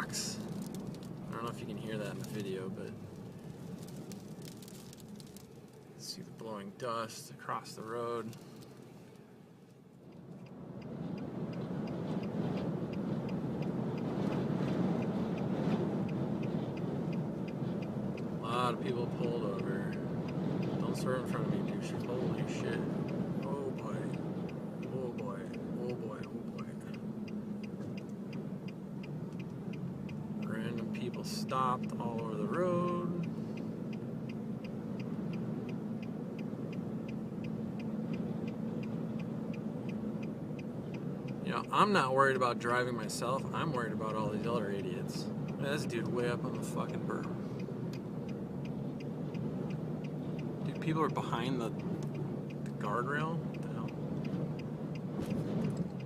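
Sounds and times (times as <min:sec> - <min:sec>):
hazard flasher ticking: 0:00.0 - 0:06.2, 0:10.0 - 0:56.0
road rumble: 0:00.0 - 0:56.0.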